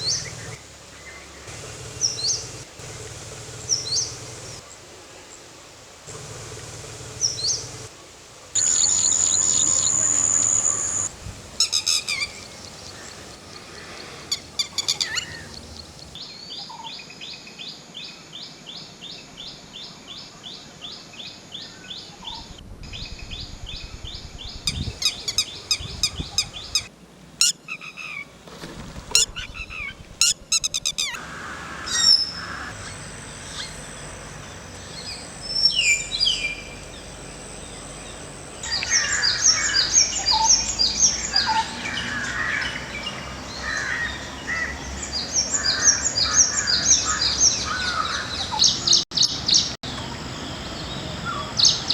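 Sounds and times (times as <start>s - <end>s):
rapid repeated bird chirps: 0.0s - 4.8s, 6.1s - 16.2s, 24.7s - 26.9s, 30.2s - 43.2s, 43.8s - 49.8s
birds calling and singing: 0.0s - 16.4s, 24.4s - 26.9s, 29.6s - 51.9s.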